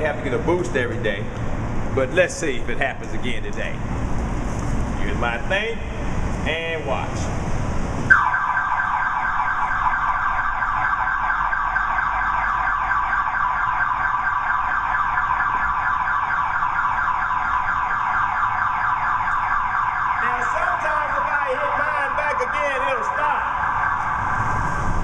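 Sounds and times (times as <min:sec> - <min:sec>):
car alarm warbling: 0:08.1 - 0:25.0.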